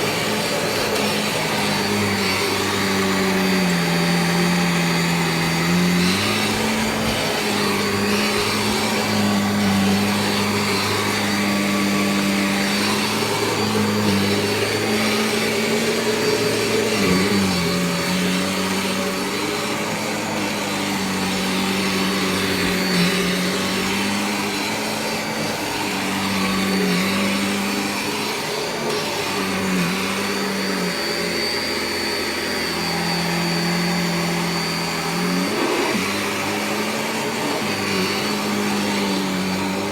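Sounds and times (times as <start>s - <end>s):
vacuum cleaner running: 0.0s - 39.9s.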